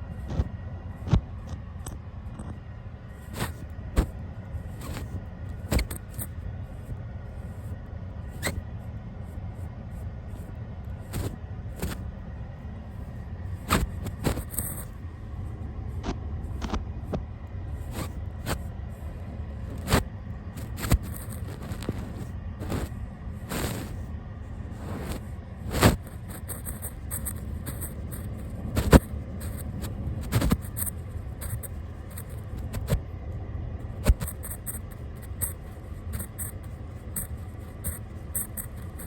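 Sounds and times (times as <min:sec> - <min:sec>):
brush rubbing on microphone: 0:13.6 - 0:15.0, 0:19.6 - 0:24.0, 0:24.8 - 0:33.0, 0:33.9 - 0:39.0
soft taps and scrapes: 0:13.6 - 0:15.0, 0:19.7 - 0:22.9, 0:24.8 - 0:33.0, 0:34.0 - 0:39.0.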